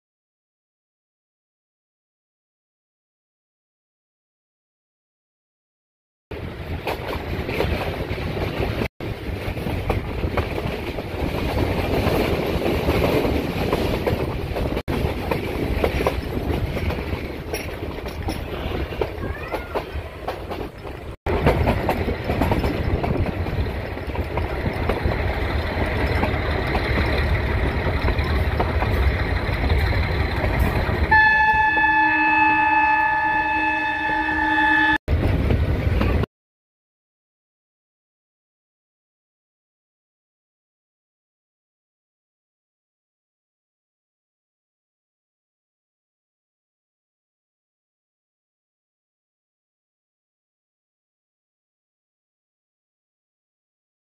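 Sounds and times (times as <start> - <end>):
train rumbling on tracks: 6.3 - 36.3
train horn chord: 31.1 - 35.0.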